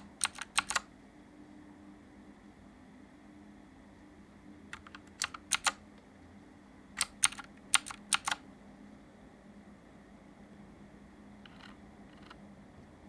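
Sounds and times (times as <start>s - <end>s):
mechanical keyboard clicks: 0.0s - 0.9s, 4.7s - 5.8s, 7.0s - 8.4s.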